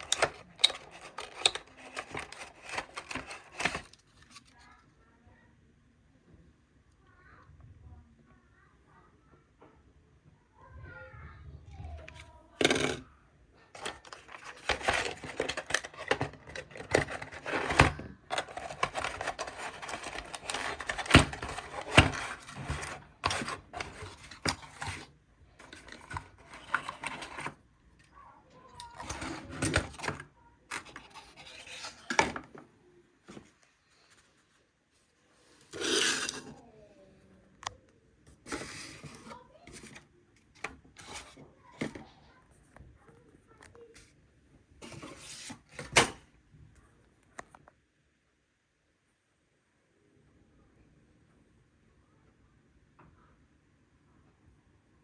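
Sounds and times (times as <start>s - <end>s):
rustling and scraping of parts: 0.0s - 4.7s, 13.7s - 27.6s, 28.6s - 32.6s, 33.2s - 36.6s, 38.3s - 42.8s, 44.8s - 46.2s.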